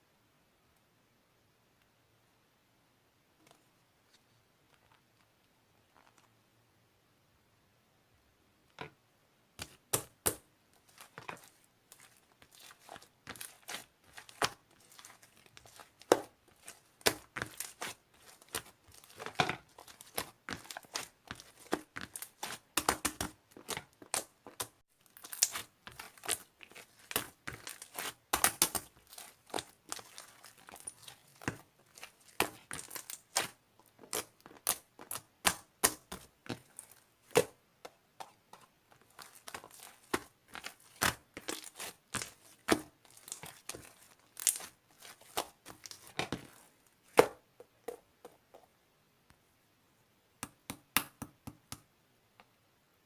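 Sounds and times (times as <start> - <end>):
slime popping and crackling: 9.6 - 37.5, 38.9 - 46.6.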